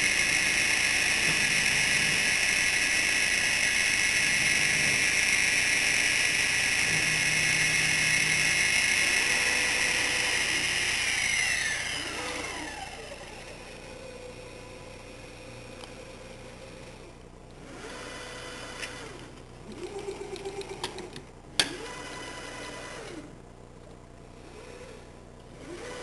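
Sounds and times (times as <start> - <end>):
spindle spinning down: 0.0 - 14.3
router spindle whining: 0.0 - 23.4, 24.3 - 26.0.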